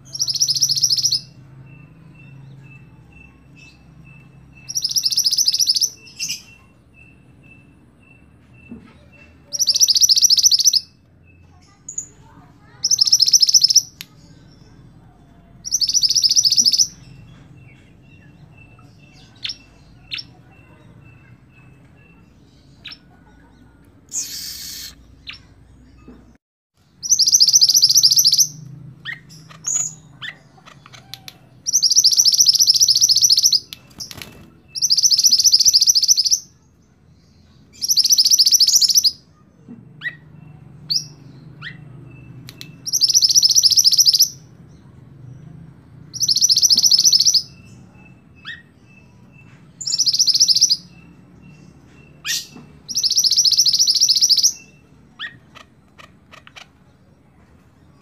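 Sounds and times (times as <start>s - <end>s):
songbird fast trills: 24.1s - 25.5s
soft short bird chirps: 24.1s - 25.6s.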